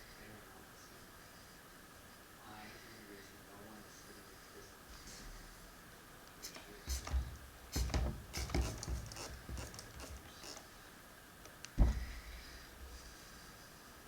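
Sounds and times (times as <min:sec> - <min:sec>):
light knocks taps and rubs: 0:06.5 - 0:10.7
sharp thump: 0:11.8 - 0:12.3.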